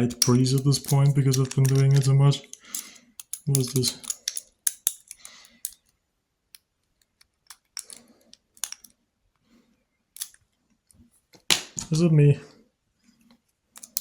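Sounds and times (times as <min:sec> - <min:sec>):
lockpick clicking in lock: 0:00.2 - 0:05.9, 0:06.6 - 0:08.9, 0:10.2 - 0:10.4, 0:13.8 - 0:14.0
lockpick scraping in lock: 0:00.2 - 0:05.9, 0:13.8 - 0:14.0.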